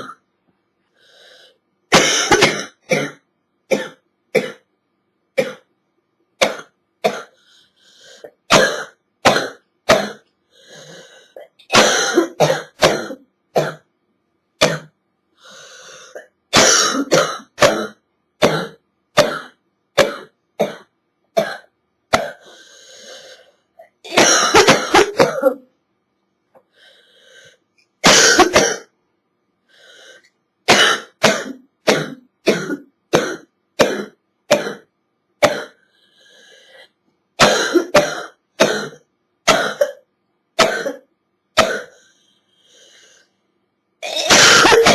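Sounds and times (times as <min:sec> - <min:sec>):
quiet breaths: 0:00.5 - 0:01.9, 0:07.3 - 0:08.5, 0:10.2 - 0:11.6, 0:15.2 - 0:16.5, 0:22.4 - 0:23.9, 0:26.5 - 0:28.0, 0:29.4 - 0:30.6, 0:35.7 - 0:37.4, 0:41.9 - 0:43.8
girl hacking cough: 0:01.9 - 0:04.6, 0:11.7 - 0:13.8, 0:16.6 - 0:22.5, 0:24.1 - 0:25.6, 0:28.0 - 0:28.9, 0:30.7 - 0:35.8, 0:37.4 - 0:40.0, 0:40.6 - 0:42.0, 0:44.0 - 0:44.9.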